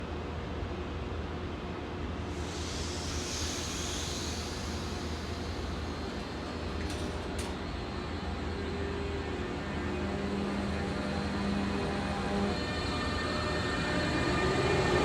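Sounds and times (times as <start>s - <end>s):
hiss: 2.3s - 8.0s
electric train accelerating: 2.3s - 15.0s.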